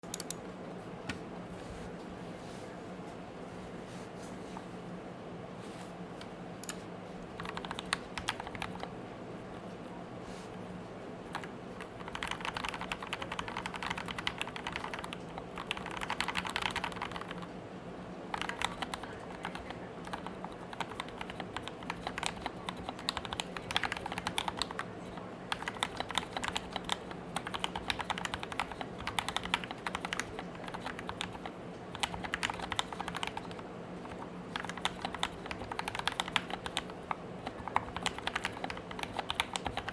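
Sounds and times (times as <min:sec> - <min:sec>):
mechanical keyboard typing: 0:00.0 - 0:00.4, 0:06.6 - 0:08.9, 0:11.3 - 0:17.5, 0:18.3 - 0:39.9
faint steady hum: 0:00.0 - 0:39.9.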